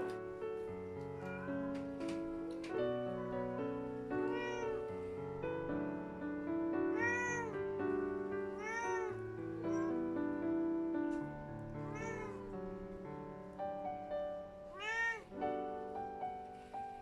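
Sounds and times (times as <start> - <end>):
piano music: 0.0 - 17.0
cat meowing: 1.2 - 1.8, 3.2 - 5.1, 6.8 - 7.7, 8.5 - 10.1, 11.9 - 12.5, 14.7 - 15.4.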